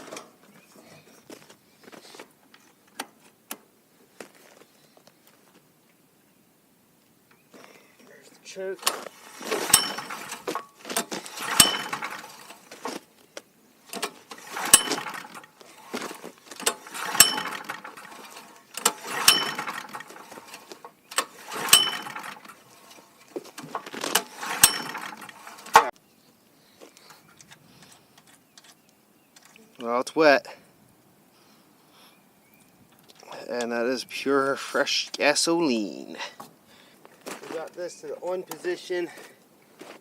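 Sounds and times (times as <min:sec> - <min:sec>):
generator engine cranking: 0:08.7 - 0:13.0, 0:13.8 - 0:25.9
sharp starter click: 0:08.8 - 0:12.6, 0:13.9 - 0:15.5, 0:16.6 - 0:22.6, 0:23.7 - 0:25.9.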